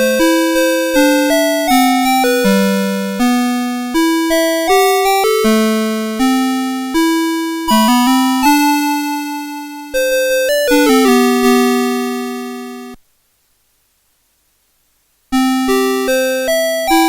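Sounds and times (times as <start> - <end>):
alarm clock electronic melody: 0.0 - 13.0.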